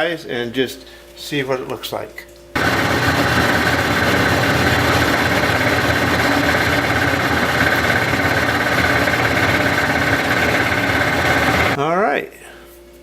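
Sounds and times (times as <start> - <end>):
metal lathe running: 2.6 - 11.8.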